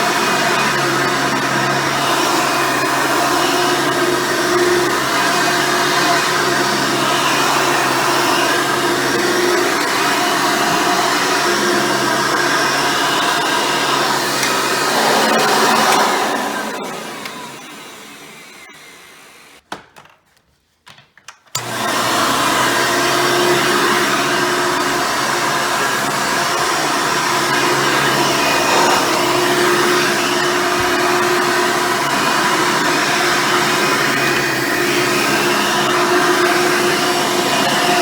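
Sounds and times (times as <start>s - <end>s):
vacuum cleaner motor running: 0.0s - 19.6s, 21.6s - 38.0s
vacuum motor winding down: 0.0s - 19.6s, 21.6s - 38.0s.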